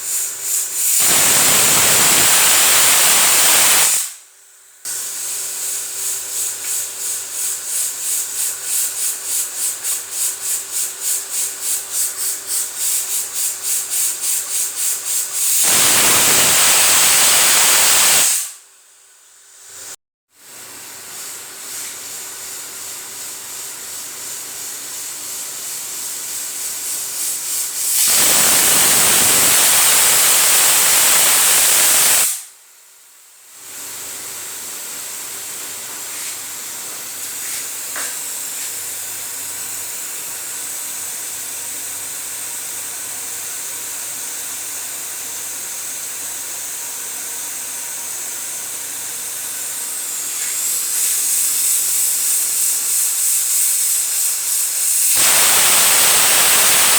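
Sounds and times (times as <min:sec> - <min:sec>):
pressure cooker steam hiss: 0:00.0 - 0:18.7, 0:19.8 - 0:32.6, 0:33.6 - 0:56.9
steam whistle blast: 0:01.0 - 0:04.2, 0:55.2 - 0:56.9.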